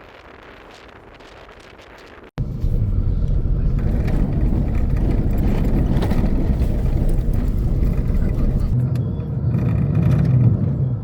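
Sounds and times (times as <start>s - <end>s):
vehicle engine and road noise: 2.4s - 11.0s.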